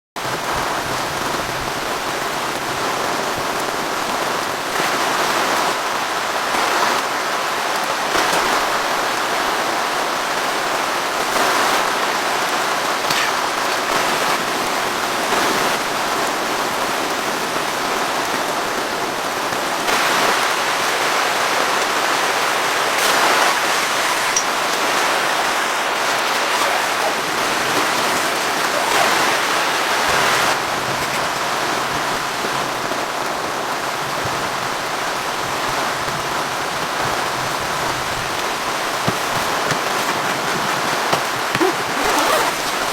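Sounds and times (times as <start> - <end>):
steady rain hiss: 0.2 - 42.9.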